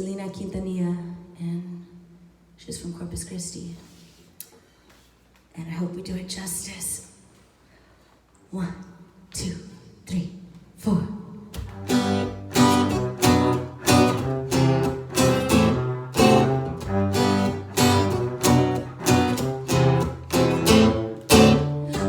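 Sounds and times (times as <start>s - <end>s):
guitar strumming chords: 11.6s - 22.0s.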